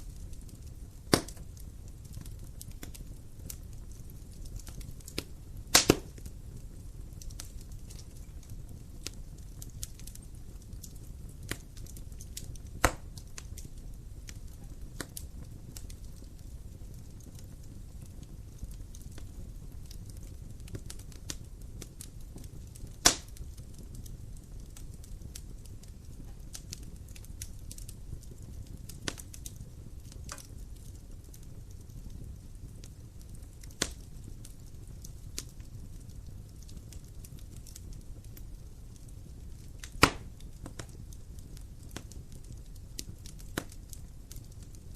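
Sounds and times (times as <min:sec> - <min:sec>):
wood fire crackling and popping: 0:00.0 - 0:44.9.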